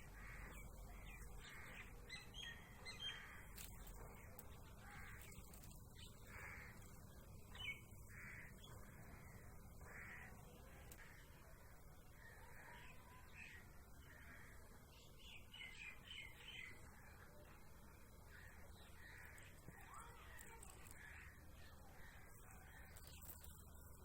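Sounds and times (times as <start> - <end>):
faint bird caws: 0.0 - 11.4, 12.1 - 15.4, 18.2 - 23.7.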